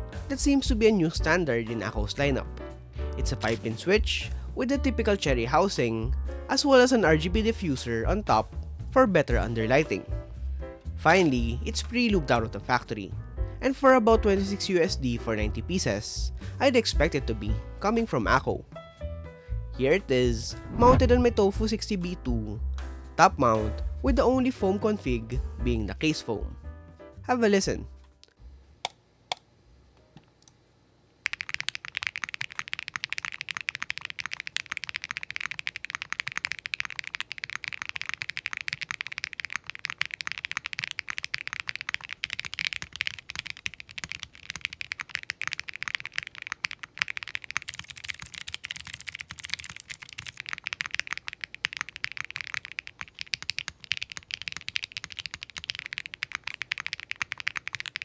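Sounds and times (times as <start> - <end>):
mechanical keyboard typing: 31.2 - 58.0.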